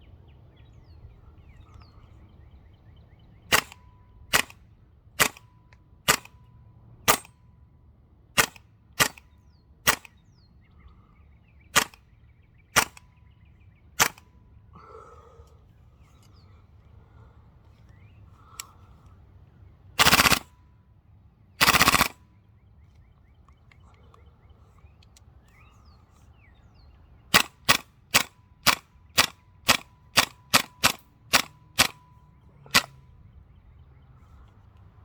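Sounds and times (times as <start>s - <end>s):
bolt cycling: 3.5s - 4.6s, 5.2s - 5.5s, 6.1s - 6.4s, 7.1s - 7.4s, 8.4s - 9.3s, 11.8s - 12.0s, 12.8s - 13.1s, 14.0s - 14.3s, 20.0s - 20.5s, 21.6s - 22.2s, 27.4s - 32.0s, 32.7s - 33.0s
sharp airsoft rifle shots: 3.5s - 4.6s, 5.2s - 5.5s, 6.1s - 6.4s, 7.1s - 7.4s, 8.4s - 10.2s, 11.7s - 12.0s, 12.8s - 13.1s, 14.0s - 14.3s, 20.0s - 20.5s, 21.6s - 22.2s, 27.3s - 32.0s, 32.7s - 33.0s
airsoft rifle blasts: 3.5s - 7.4s, 8.4s - 10.2s, 11.7s - 12.1s, 12.7s - 13.2s, 14.0s - 14.4s, 20.0s - 20.6s, 21.6s - 22.2s, 27.3s - 32.1s, 32.7s - 33.0s.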